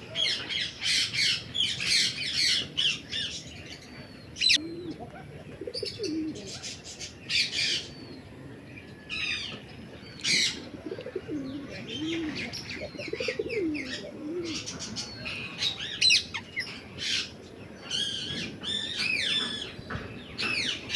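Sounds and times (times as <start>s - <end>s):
low wavering cooing calls: 4.4s - 6.8s, 10.2s - 17.2s.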